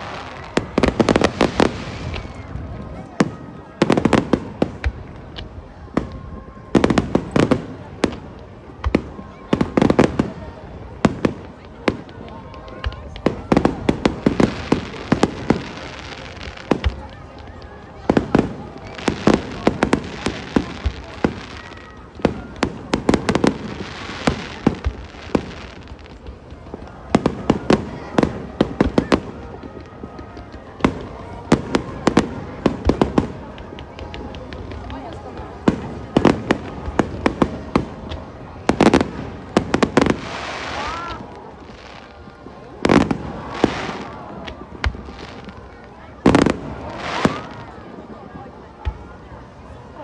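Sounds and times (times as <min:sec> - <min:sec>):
fireworks hissing: 0:00.0 - 0:09.0, 0:13.0 - 0:29.6, 0:30.9 - 0:48.2
fireworks bangs and crackles: 0:00.0 - 0:50.0.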